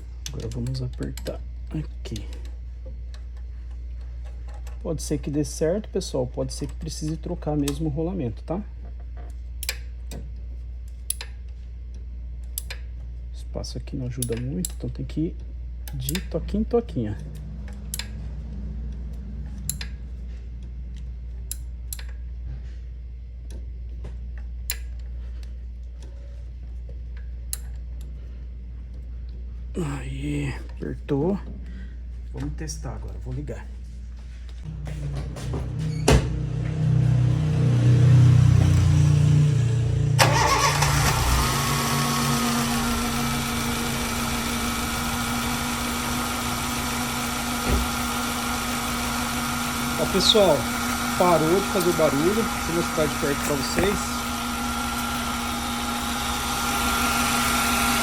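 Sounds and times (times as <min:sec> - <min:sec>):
wrench clicking on bolt: 0:14.2 - 0:14.8, 0:17.2 - 0:18.2
car engine starting and idling: 0:34.7 - 0:58.0.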